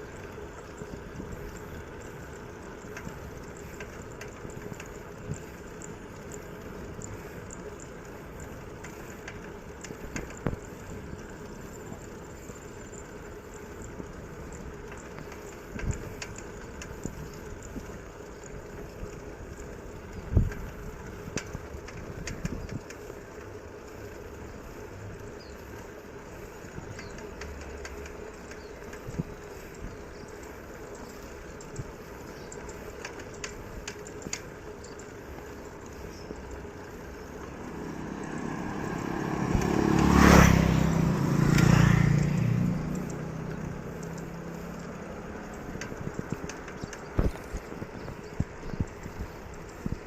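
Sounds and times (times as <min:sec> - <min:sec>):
bicycle rolling on rough road: 0:00.0 - 0:50.0.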